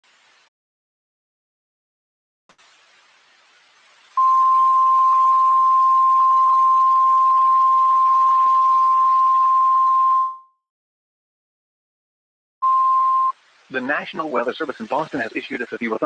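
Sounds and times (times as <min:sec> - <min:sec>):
steady high alert tone: 0:04.2 - 0:10.5
radio hiss: 0:12.6 - 0:16.0.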